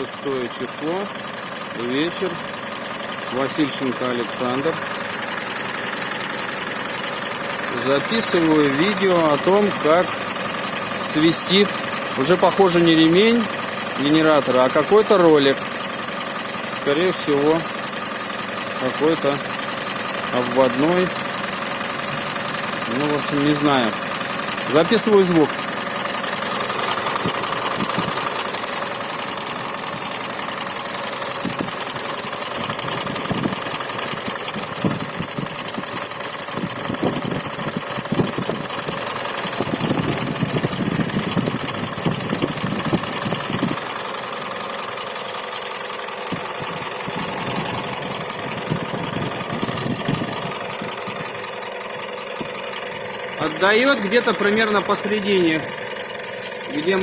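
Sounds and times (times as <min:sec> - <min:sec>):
car engine running: 0:00.0 - 0:57.0
high-pitched belt whistle: 0:20.1 - 0:57.0.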